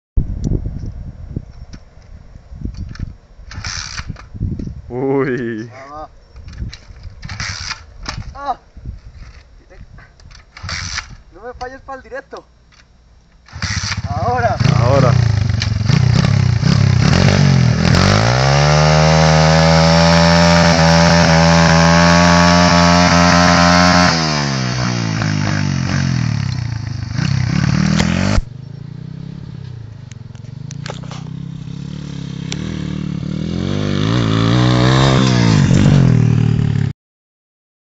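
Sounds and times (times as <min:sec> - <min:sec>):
motorbike engine revving: 0:13.4 - 0:36.9.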